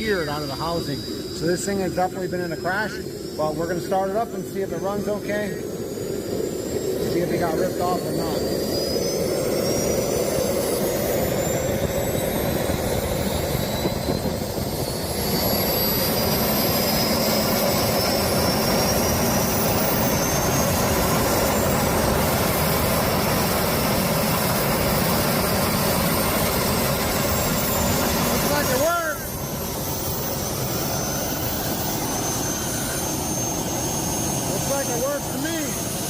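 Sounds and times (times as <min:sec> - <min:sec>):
jet engine turbine whine: 0:00.0 - 0:36.0
steady rushing noise: 0:00.0 - 0:36.0.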